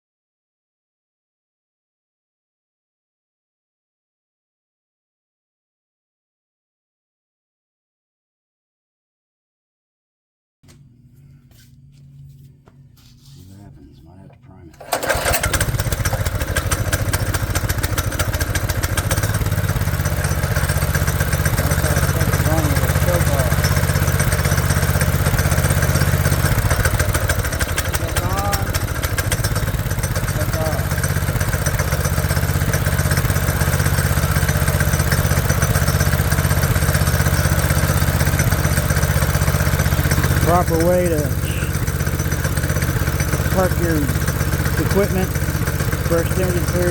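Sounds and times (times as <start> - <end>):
small engine running: 14.7 - 46.9.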